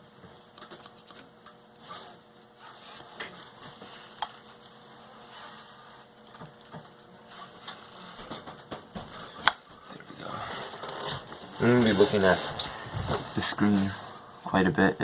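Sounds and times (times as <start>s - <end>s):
pencil scratching on foam board: 11.5s - 14.1s.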